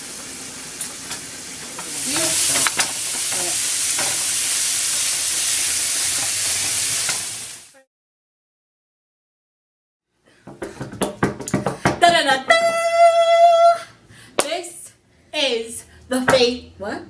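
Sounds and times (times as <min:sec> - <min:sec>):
food sizzling in a pan: 0:00.0 - 0:07.9.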